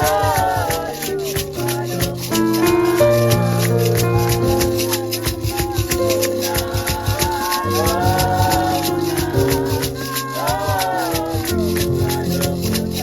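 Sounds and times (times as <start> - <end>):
music with shaker rhythm: 0.0 - 13.0.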